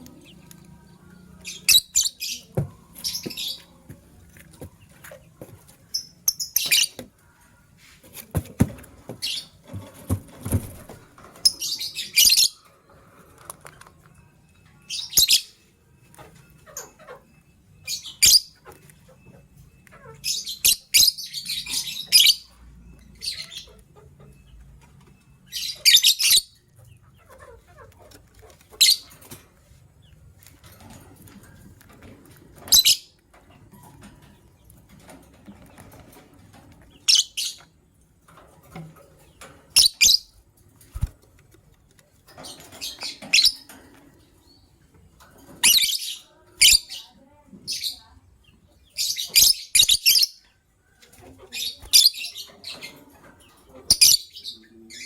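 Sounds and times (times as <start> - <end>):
lovebirds chirping: 0.0 - 55.0
knocks and rustles: 8.0 - 11.5.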